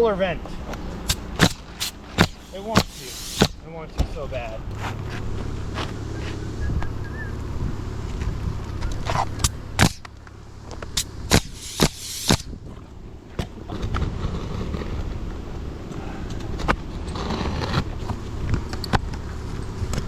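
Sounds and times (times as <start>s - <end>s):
low rumble of wind: 0.0s - 20.0s
nail gun shots and knocks: 1.1s - 3.6s, 9.4s - 10.1s, 11.0s - 12.6s.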